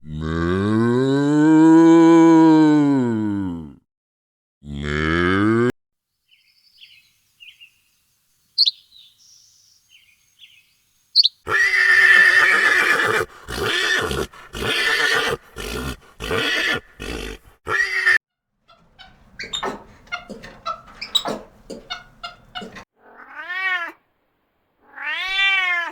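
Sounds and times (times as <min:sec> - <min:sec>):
horse neighing: 0:11.5 - 0:23.7.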